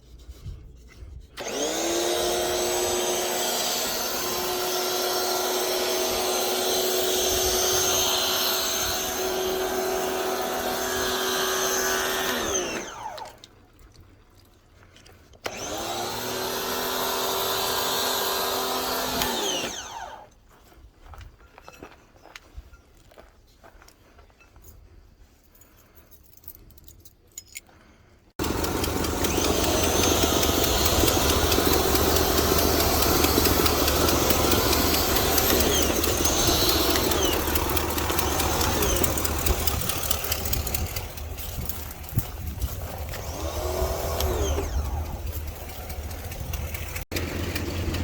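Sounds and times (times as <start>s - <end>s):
motor humming: 1.4s - 13.4s, 15.4s - 20.3s, 28.4s - 48.0s.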